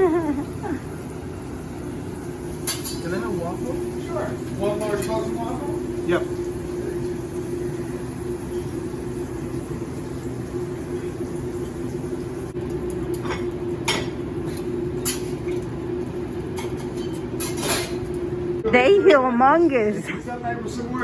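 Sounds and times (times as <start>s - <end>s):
kitchen equipment humming: 0.0s - 21.0s
utensils and dishes clinking: 2.1s - 7.2s, 12.6s - 18.4s.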